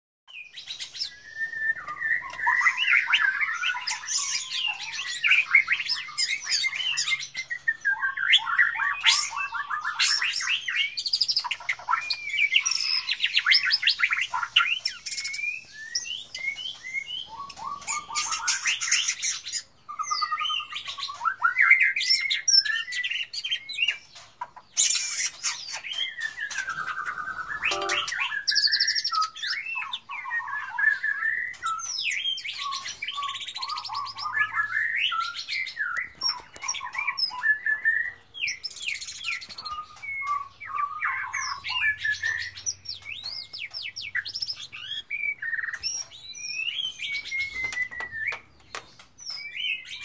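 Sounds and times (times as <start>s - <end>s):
bird chirping and chattering: 22.2s - 29.4s, 30.6s - 50.0s.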